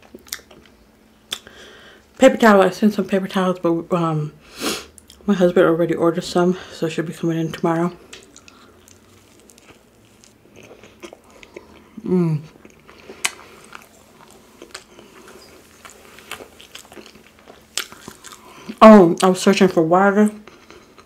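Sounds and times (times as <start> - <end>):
person chewing: 0.0 - 1.6, 8.0 - 19.4, 20.4 - 21.0.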